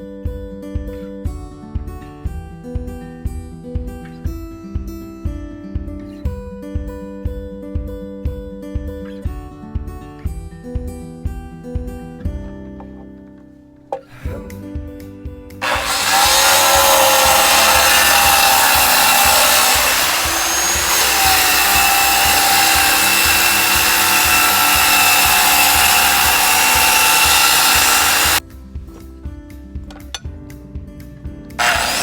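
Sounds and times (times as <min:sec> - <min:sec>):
power saw cutting wood: 0:15.6 - 0:28.4, 0:31.6 - 0:32.0.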